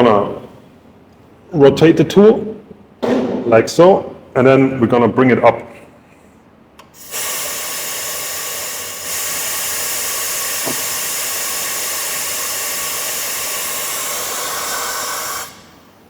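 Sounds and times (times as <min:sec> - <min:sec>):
compressed air hissing: 0:06.9 - 0:16.0.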